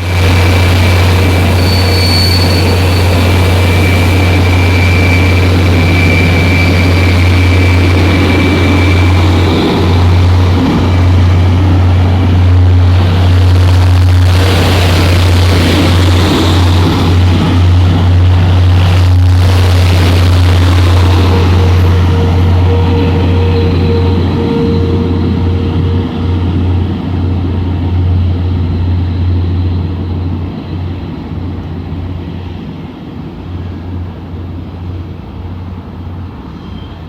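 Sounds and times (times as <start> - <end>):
thin high whine: 0.0 - 30.8
train low drone with hiss: 0.0 - 37.0.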